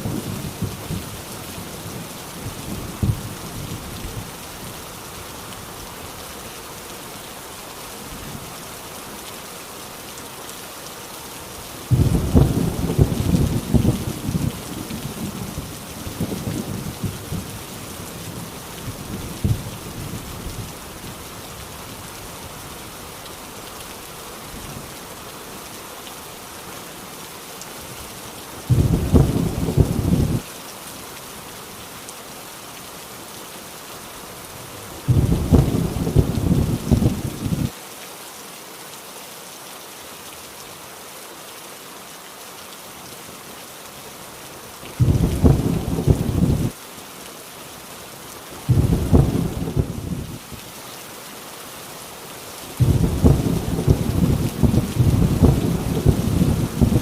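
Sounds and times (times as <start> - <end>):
heavy rain falling: 0.0 - 57.0
thunder rumbling: 11.9 - 17.6, 28.7 - 30.4, 35.1 - 37.7, 45.0 - 46.8, 48.7 - 50.4, 52.8 - 57.0.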